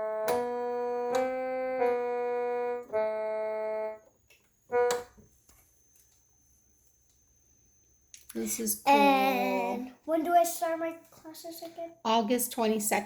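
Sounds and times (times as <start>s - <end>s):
electronic keyboard notes: 0.0s - 5.2s.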